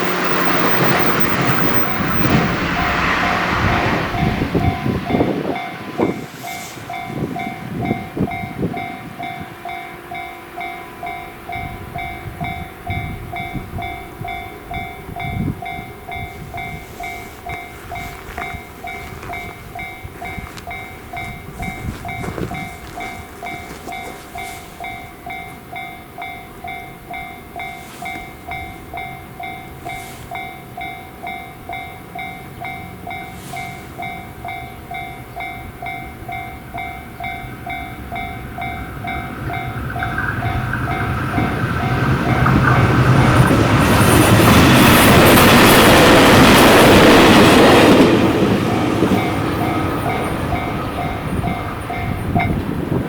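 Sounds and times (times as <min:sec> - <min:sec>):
level-crossing warning bell ringing: 0:00.0 - 0:53.0
train wheels clacking over rail joints: 0:15.6 - 0:25.8, 0:26.6 - 0:53.0.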